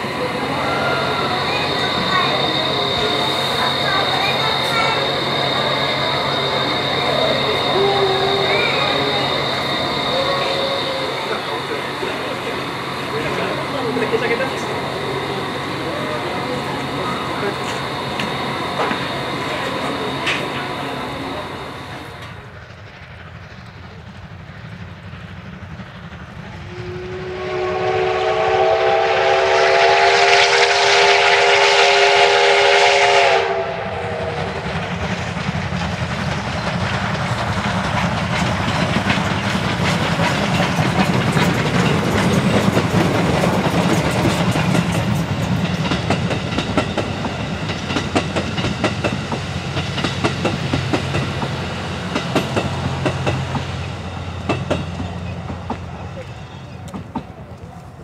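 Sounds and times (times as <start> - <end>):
steam locomotive whistle: 0.0 - 22.2, 26.6 - 34.7
train clattering past: 0.0 - 58.0.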